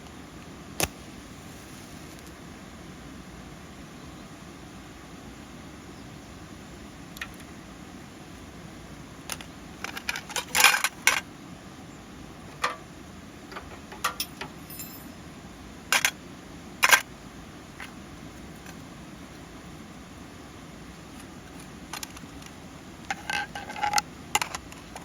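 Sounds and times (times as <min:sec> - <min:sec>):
steady hiss: 0:00.0 - 0:25.0
metallic clinks and clatters: 0:13.5 - 0:15.2.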